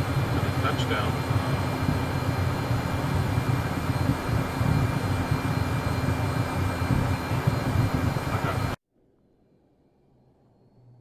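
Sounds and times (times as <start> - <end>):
jet engines rumbling: 0.0 - 8.8
faint high jet whine: 0.0 - 11.0.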